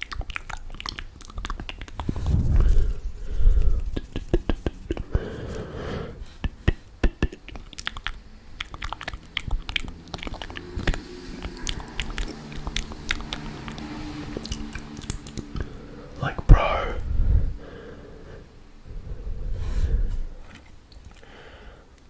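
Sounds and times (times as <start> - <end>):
mouth clicks and smacks: 6.4 - 15.7.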